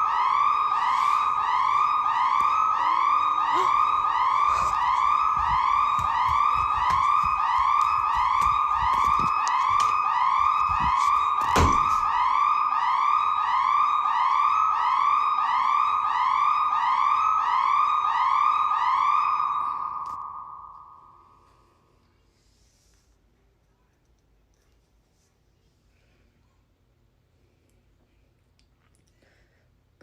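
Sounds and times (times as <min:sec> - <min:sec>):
electronic alarm whoops: 0:00.0 - 0:21.4.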